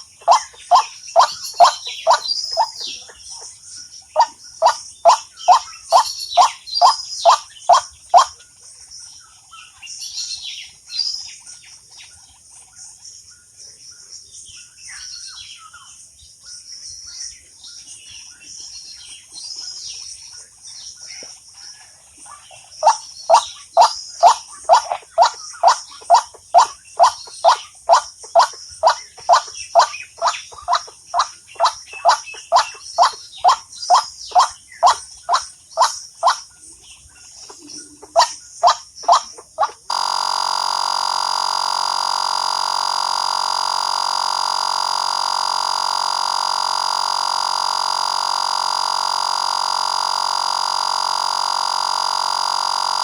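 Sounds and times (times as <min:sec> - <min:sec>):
high insect trill: 0:00.0 - 0:02.8, 0:04.2 - 0:08.3, 0:22.8 - 0:36.4, 0:38.2 - 0:53.0
low whistled bird call: 0:00.0 - 0:03.0, 0:04.2 - 0:08.3, 0:22.8 - 0:36.4, 0:38.2 - 0:53.0
high bird chirps: 0:00.0 - 0:03.1, 0:04.2 - 0:08.4, 0:22.8 - 0:36.4, 0:38.1 - 0:53.0.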